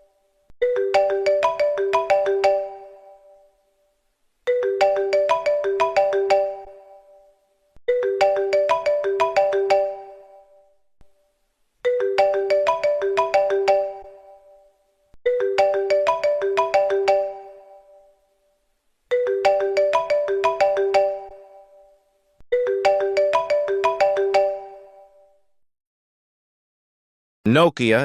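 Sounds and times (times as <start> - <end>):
phone ringtone melody: 0.6 - 3.6, 4.5 - 10.8, 11.8 - 18.2, 19.1 - 25.4.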